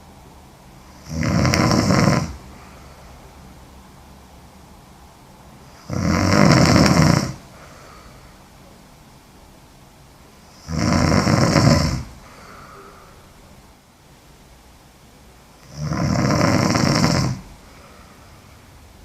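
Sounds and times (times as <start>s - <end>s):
quiet breathing: 0.7s - 3.7s, 5.6s - 8.8s, 10.3s - 13.7s, 15.6s - 19.0s
woman snoring heavily: 0.8s - 2.9s, 5.7s - 8.2s, 10.5s - 13.1s, 15.6s - 18.2s.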